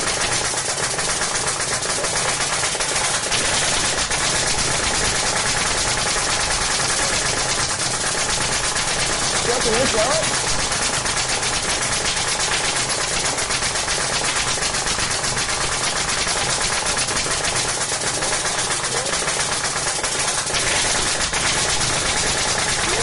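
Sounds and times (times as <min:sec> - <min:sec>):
nail gun firing rapidly: 0:00.0 - 0:23.0.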